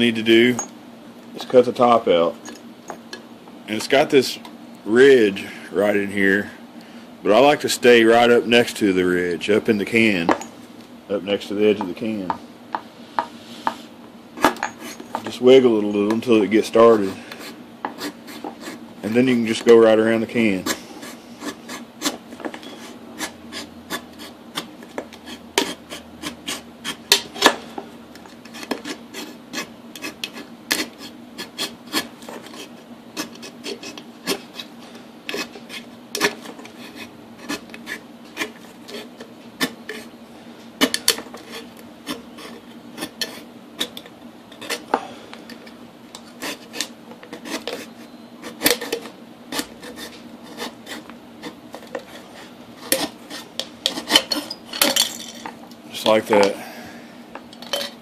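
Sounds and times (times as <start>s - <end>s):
can opener cutting metal can: 23.2s - 27.5s, 28.4s - 34.7s, 35.3s - 40.1s, 46.3s - 52.2s, 52.8s - 54.6s.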